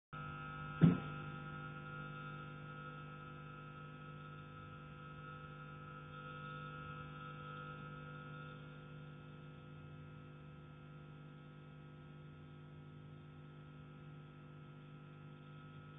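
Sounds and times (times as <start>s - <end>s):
electrical hum: 0.2s - 15.9s
loud knock on heating pipe: 0.8s - 1.1s.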